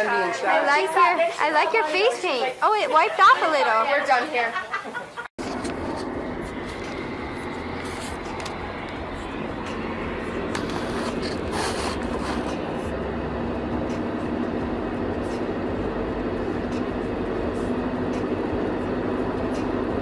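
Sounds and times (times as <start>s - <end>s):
vehicle rumble and drone: 5.4s - 20.0s.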